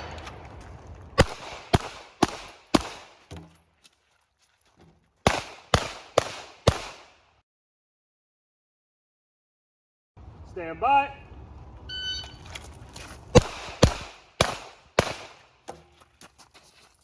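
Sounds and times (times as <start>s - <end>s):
pistol shots: 1.2s - 3.3s, 5.2s - 7.2s, 13.3s - 15.6s.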